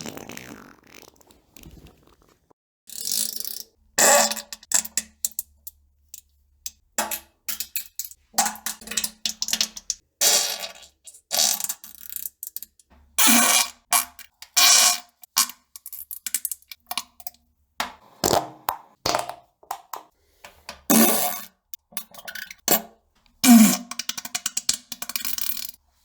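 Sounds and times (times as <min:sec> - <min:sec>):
loud fart sounds: 0:00.0 - 0:02.5.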